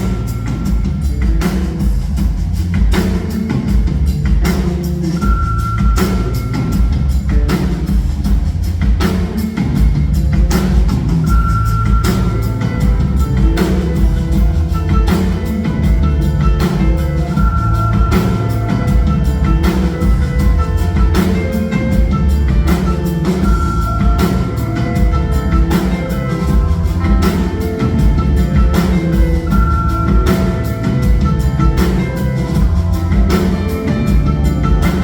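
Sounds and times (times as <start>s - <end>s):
live band music: 0.0s - 35.0s.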